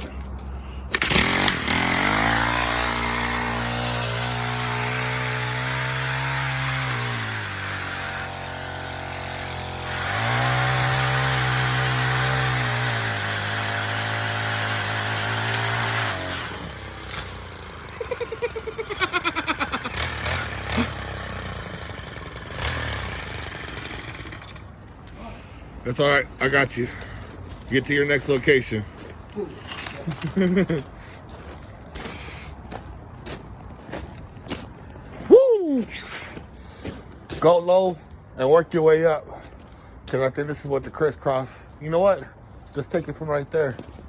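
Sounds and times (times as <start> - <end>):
chainsaw revving: 0.9 - 24.7.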